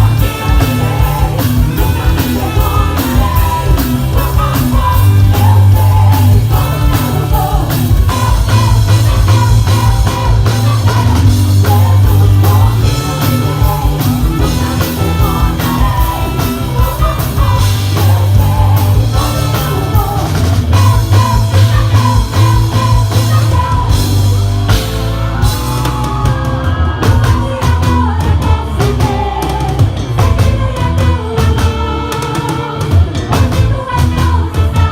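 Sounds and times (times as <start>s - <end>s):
drum kit: 0.0s - 34.9s
guitar: 0.0s - 34.9s
heavy bass line: 0.0s - 34.9s
person singing: 0.0s - 34.9s.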